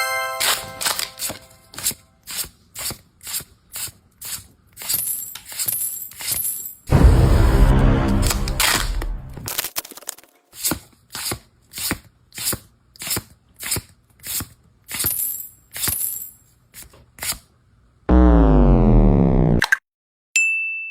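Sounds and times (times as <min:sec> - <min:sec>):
edited sound effect: 0:06.9 - 0:09.5, 0:18.1 - 0:19.6.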